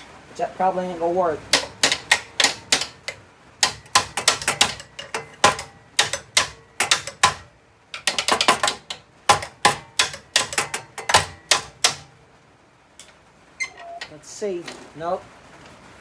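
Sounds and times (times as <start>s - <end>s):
metal tool clicks and knocks: 1.5s - 12.2s, 13.0s - 14.2s.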